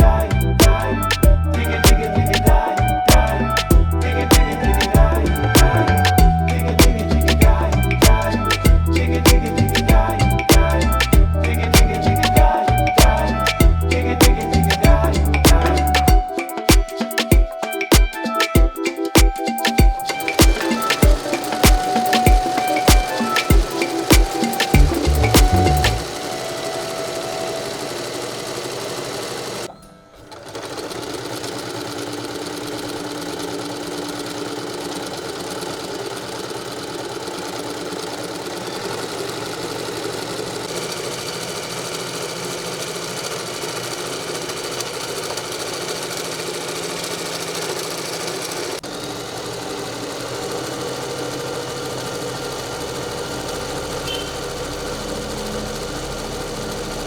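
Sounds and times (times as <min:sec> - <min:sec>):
sewing machine running: 0:20.1 - 0:57.0.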